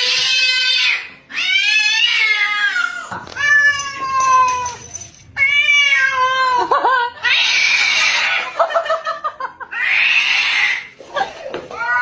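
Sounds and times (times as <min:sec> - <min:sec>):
cat screaming: 0:00.0 - 0:04.7, 0:07.2 - 0:08.6, 0:09.7 - 0:10.9.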